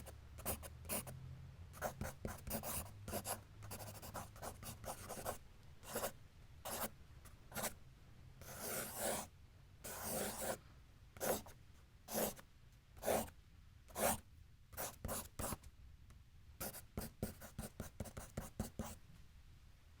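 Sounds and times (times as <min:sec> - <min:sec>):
pencil scratching on paper: 0:01.8 - 0:06.1, 0:06.7 - 0:06.9, 0:08.4 - 0:09.3, 0:09.9 - 0:10.6, 0:11.2 - 0:11.5, 0:12.1 - 0:12.4, 0:14.0 - 0:14.2, 0:16.6 - 0:19.0.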